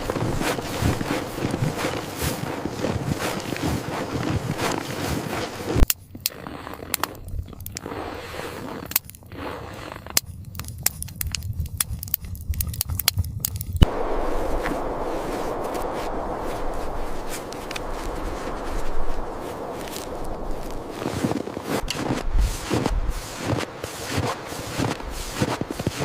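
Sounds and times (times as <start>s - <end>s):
sharp crackles and snaps: 0.0s - 8.0s, 8.6s - 26.0s
steady rushing noise: 13.8s - 26.0s.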